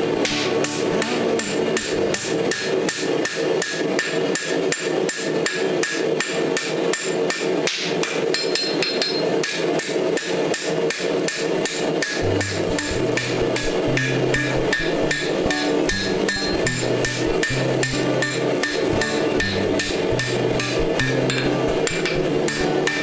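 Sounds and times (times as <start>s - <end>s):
hammer striking steel on anvil: 7.7s - 10.3s.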